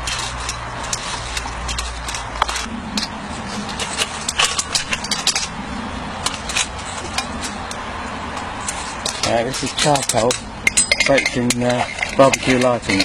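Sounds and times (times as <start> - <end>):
small hard objects clicking: 0.0 - 5.6
steady background hiss: 0.0 - 13.0.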